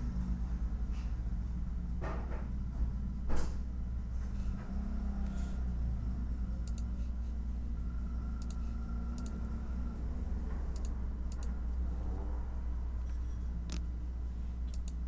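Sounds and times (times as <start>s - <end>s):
low background hum: 0.0s - 15.0s
keyboard keystroke clicks: 6.7s - 6.9s, 8.4s - 8.6s, 9.2s - 9.4s, 14.7s - 15.0s.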